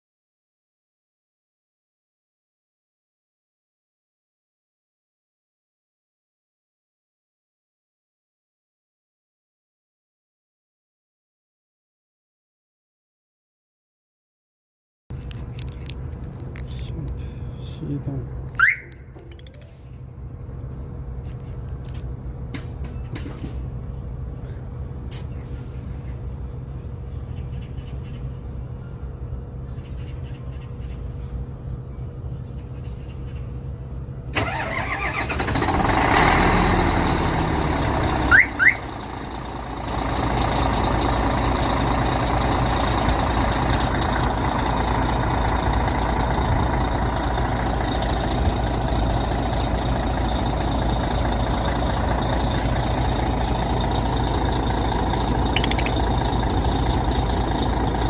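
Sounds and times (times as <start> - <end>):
diesel engine cranking and idling: 15.2 - 58.0
car alarm chirps: 18.6 - 19.2, 38.2 - 39.0, 55.5 - 56.1.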